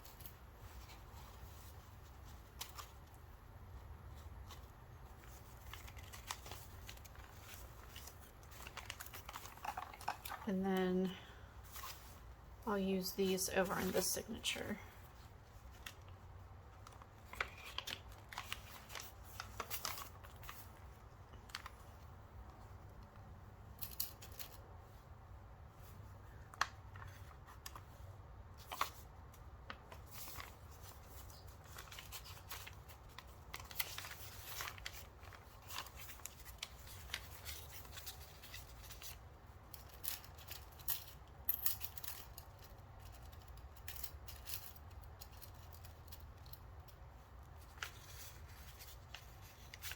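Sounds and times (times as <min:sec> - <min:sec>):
paper rustling: 0:00.0 - 0:12.4, 0:13.6 - 0:22.1, 0:25.8 - 0:40.9, 0:44.2 - 0:49.9.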